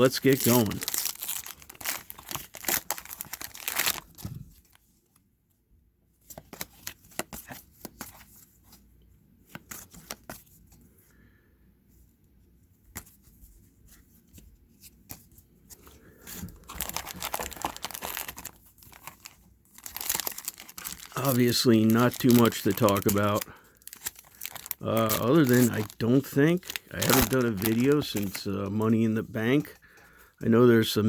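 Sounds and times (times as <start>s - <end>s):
packaging being torn open: 0.0s - 4.4s, 16.6s - 28.5s
packaging crinkling: 0.0s - 4.8s, 15.8s - 29.8s.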